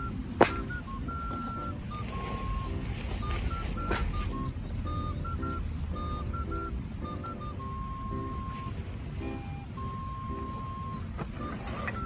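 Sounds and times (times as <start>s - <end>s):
electronic beeping melody: 0.0s - 12.0s.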